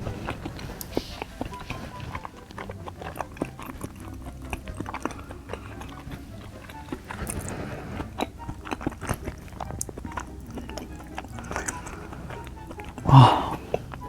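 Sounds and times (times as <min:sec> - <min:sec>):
close chewing and mouth smacks: 0:00.0 - 0:14.0.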